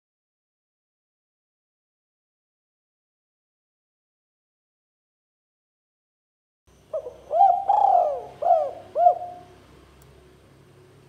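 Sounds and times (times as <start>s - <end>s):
dove cooing: 6.9s - 9.6s.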